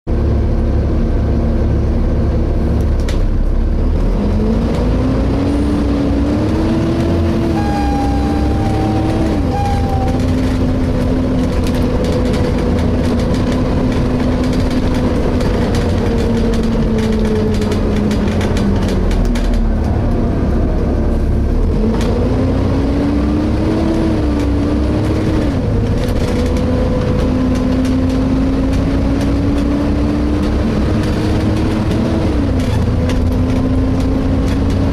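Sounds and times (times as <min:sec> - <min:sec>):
bus engine rumble: 0:00.1 - 0:34.9
whining tone rising in pitch: 0:06.1 - 0:11.1.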